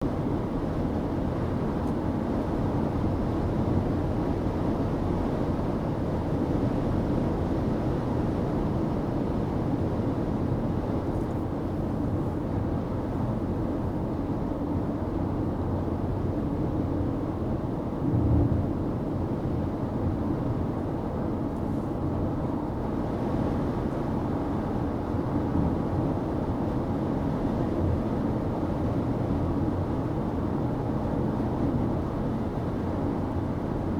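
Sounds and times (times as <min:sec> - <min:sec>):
car road and tyre rumble: 0:08.6 - 0:33.9
low thump: 0:18.0 - 0:18.8.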